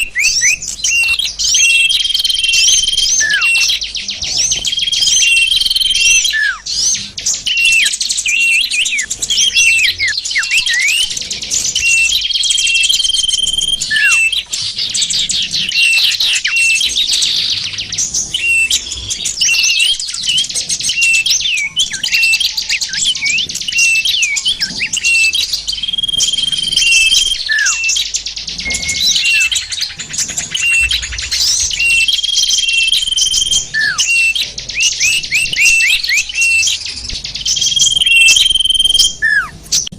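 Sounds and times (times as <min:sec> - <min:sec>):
songbirds chirping and twittering: 0:00.0 - 0:39.9
downward sweeping bird notes: 0:15.6 - 0:39.9.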